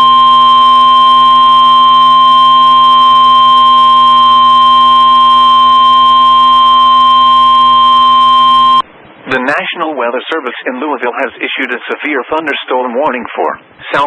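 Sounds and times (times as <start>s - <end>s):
steady alarm tone: 0.0s - 8.9s.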